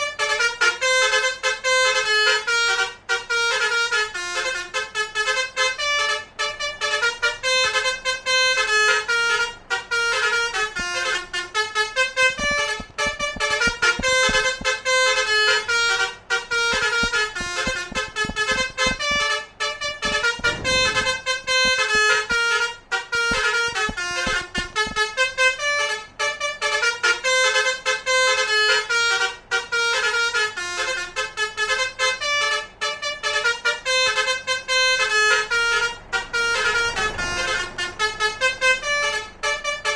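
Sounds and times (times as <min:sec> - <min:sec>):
low noise: 0:00.0 - 0:26.8
musical bus horn melody: 0:00.0 - 0:39.9.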